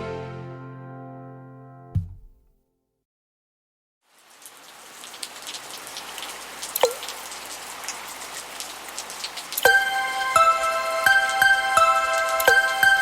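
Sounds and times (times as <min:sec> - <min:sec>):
rain patter: 0:04.0 - 0:13.0
water drop plink: 0:06.7 - 0:07.2, 0:12.4 - 0:13.0.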